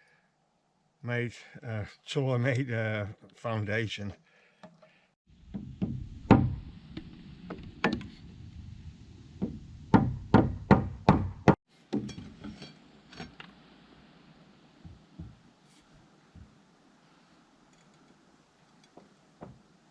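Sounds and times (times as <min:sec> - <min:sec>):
hammer striking timber: 0:05.5 - 0:06.7, 0:09.4 - 0:12.1.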